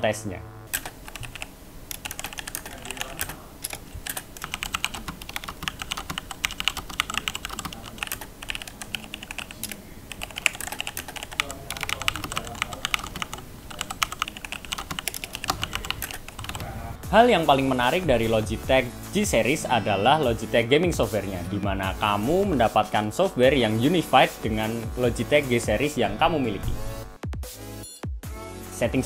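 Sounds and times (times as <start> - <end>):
mechanical keyboard typing: 0.7 - 16.7.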